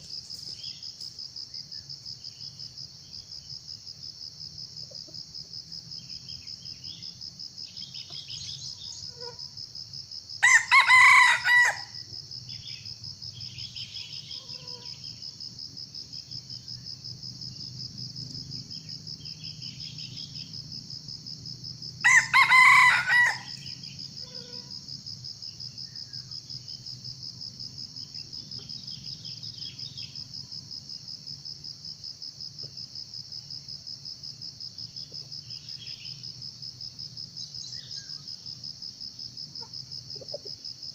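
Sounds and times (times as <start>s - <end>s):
crickets trilling: 0.0s - 40.9s
junglefowl crowing: 10.4s - 12.0s, 22.0s - 24.7s.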